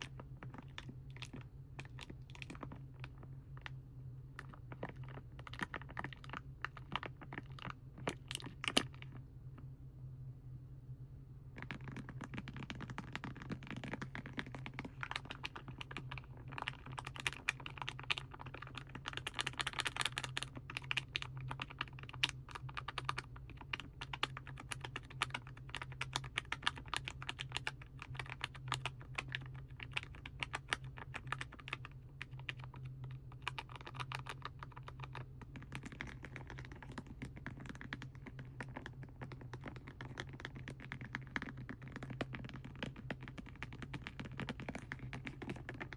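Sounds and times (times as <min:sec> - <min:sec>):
low hum: 0:00.0 - 0:11.6.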